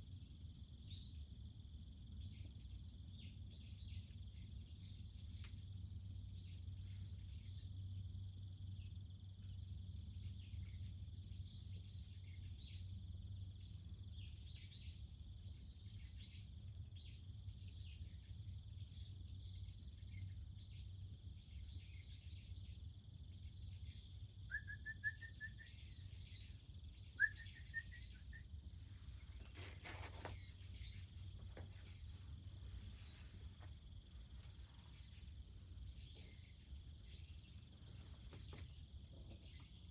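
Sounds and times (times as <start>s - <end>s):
insect drone: 0.0s - 39.9s
bird chirps: 23.4s - 39.9s
rising bird calls: 24.5s - 33.7s
low steady rumble: 25.6s - 39.9s.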